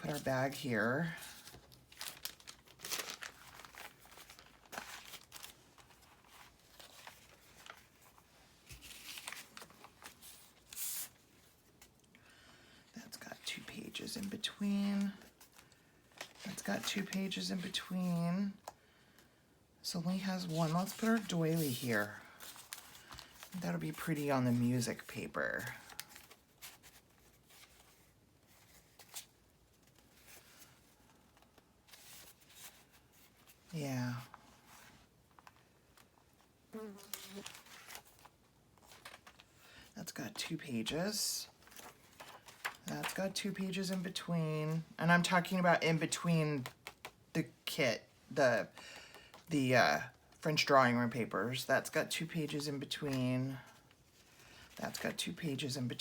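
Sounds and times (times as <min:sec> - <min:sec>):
paper rustling: 0:00.0 - 0:12.0, 0:13.6 - 0:18.2, 0:20.4 - 0:45.6.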